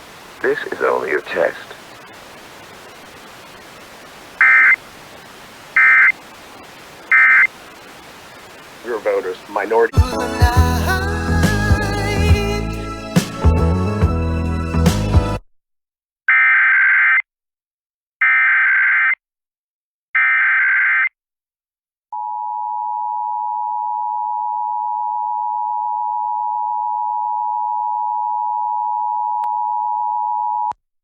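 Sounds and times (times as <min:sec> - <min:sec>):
buzzy digital header bursts: 0:00.0 - 0:13.0.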